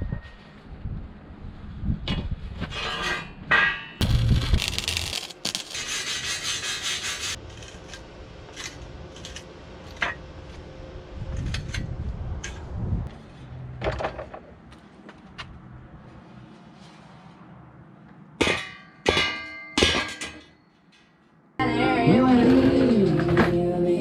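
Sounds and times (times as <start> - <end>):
rapid rasping scrape: 4.1 - 7.9.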